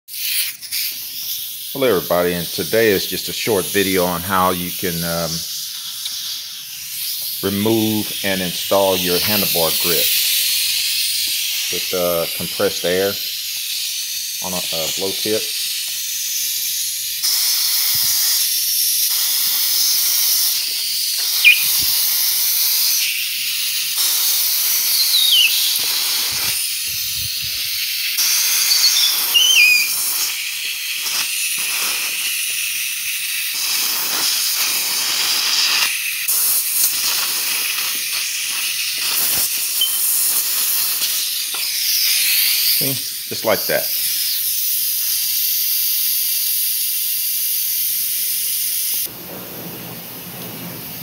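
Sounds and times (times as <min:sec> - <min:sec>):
compressed air hissing: 0:00.1 - 0:51.0
short squeaks: 0:21.4 - 0:22.0, 0:24.9 - 0:25.8, 0:28.5 - 0:30.0, 0:39.8 - 0:40.2.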